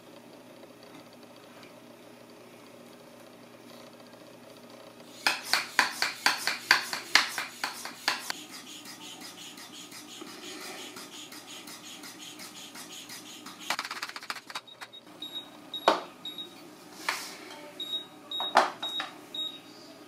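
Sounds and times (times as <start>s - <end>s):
rapid clicking: 13.1s - 14.7s.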